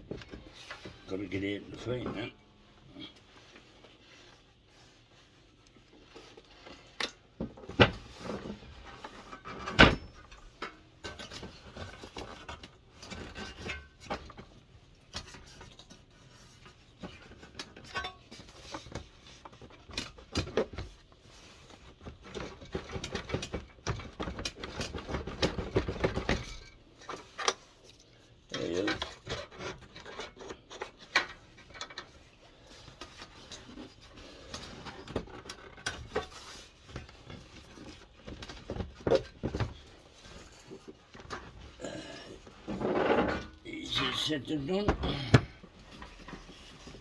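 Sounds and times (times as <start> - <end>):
rattling and rubbing: 42.4 - 43.6.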